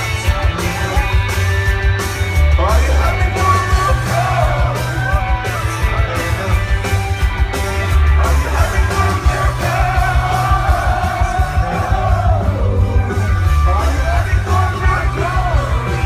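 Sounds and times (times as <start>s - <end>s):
live rock band playing: 0.0s - 16.0s
person singing: 2.6s - 6.9s, 8.1s - 16.0s.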